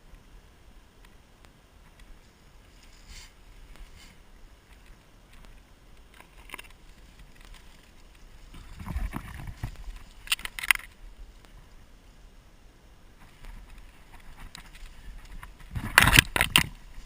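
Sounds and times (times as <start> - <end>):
rustling gear: 6.1 - 11.0.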